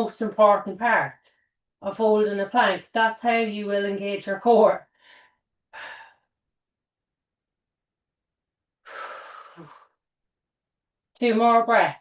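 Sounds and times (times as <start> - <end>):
woman breathing hard: 8.8 - 10.0.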